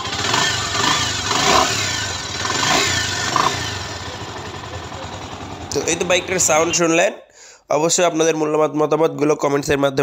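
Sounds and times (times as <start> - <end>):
motorcycle engine revving: 0.0 - 7.0.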